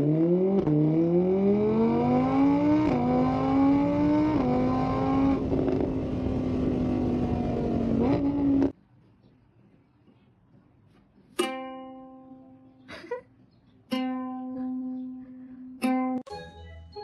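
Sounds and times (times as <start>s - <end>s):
plucked string notes: 11.4s - 12.8s, 13.9s - 16.9s.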